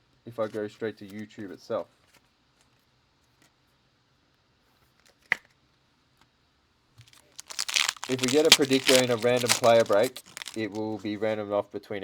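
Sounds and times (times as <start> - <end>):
faint rustles: 7.2 - 10.8.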